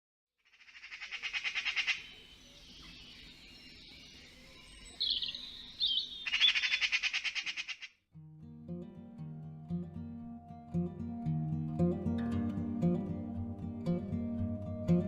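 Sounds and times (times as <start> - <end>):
bird chattering: 0.5 - 2.2, 5.0 - 7.9.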